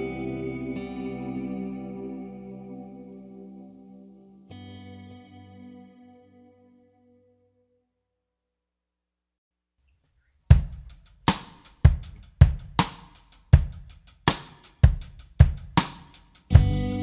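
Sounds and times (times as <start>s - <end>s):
drum kit beat: 10.5s - 17.0s.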